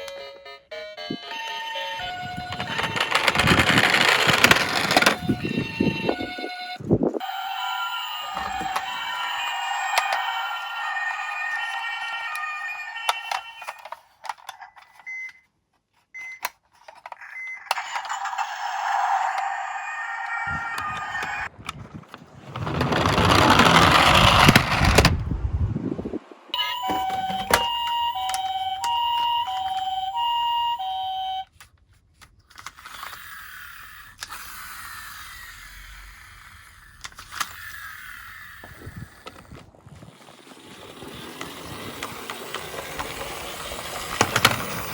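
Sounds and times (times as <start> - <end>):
tinny electronic toy sounds: 0.0 - 15.1, 17.1 - 21.5, 26.6 - 31.5, 32.7 - 44.9
clicks and clatter: 2.3 - 5.5.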